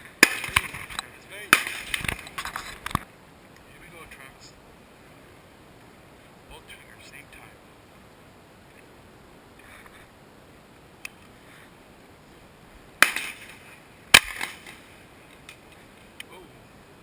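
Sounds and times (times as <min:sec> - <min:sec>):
shotgun blasts with echo: 0:01.4 - 0:02.0, 0:13.0 - 0:14.8.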